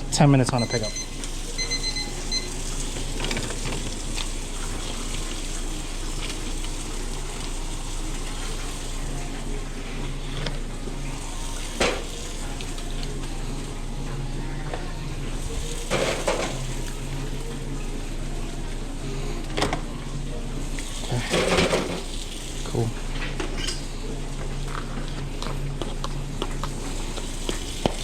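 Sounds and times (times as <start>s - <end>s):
food sizzling: 0.0s - 28.0s
utensils and pans knocking: 21.3s - 22.1s.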